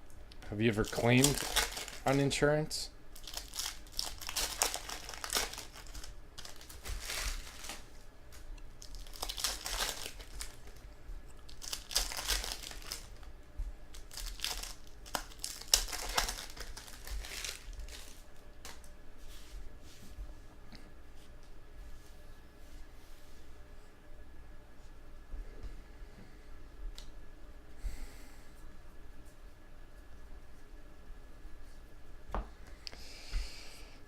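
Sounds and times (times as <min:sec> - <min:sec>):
card pack wrappers crinkling and tearing: 0:00.6 - 0:02.5, 0:03.1 - 0:13.3, 0:13.9 - 0:18.9.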